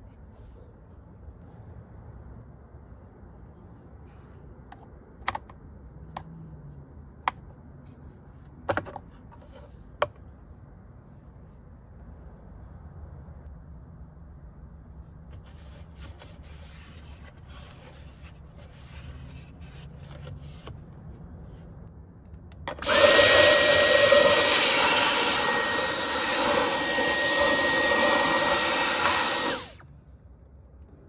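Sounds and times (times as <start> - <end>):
power tool motor whining: 22.7 - 29.8.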